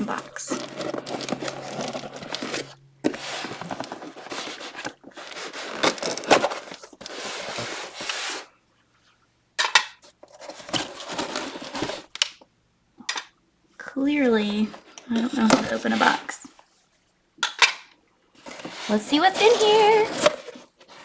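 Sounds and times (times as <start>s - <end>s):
cardboard box being torn open: 0.0s - 6.8s
tape ripping: 0.0s - 6.8s.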